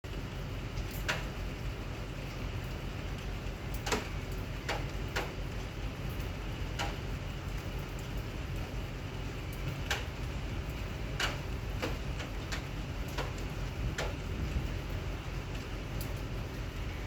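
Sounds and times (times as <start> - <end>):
rain falling: 0.1 - 17.0
drops ticking on hard surface: 11.2 - 14.3.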